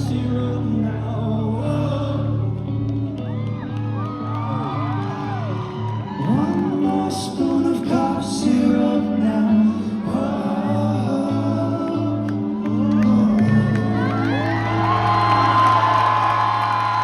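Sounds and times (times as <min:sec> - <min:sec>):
bass line: 0:00.0 - 0:17.0
person singing: 0:06.1 - 0:15.6.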